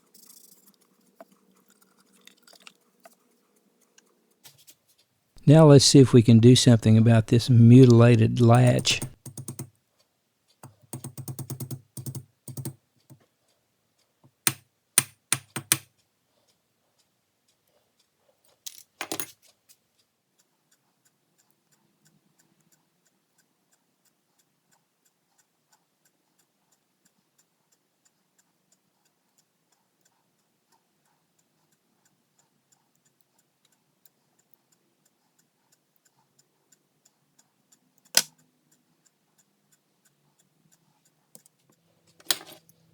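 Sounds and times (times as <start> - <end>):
metal latch clicks and taps: 14.5 - 15.9.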